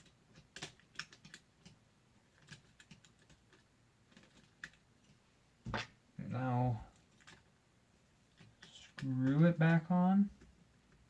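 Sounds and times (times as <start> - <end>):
small laptop parts clicking: 0.0 - 5.2, 6.9 - 7.5.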